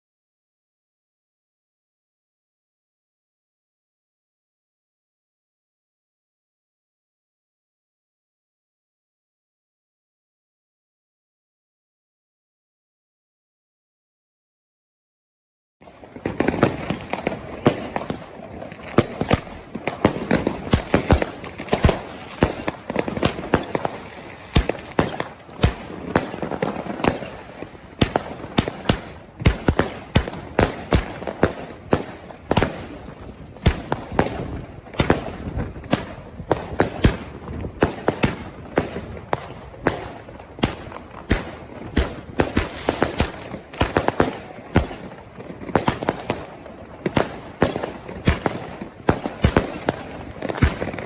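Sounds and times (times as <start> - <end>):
firework bangs: 15.8 - 51.0
firework crackling: 15.9 - 51.0.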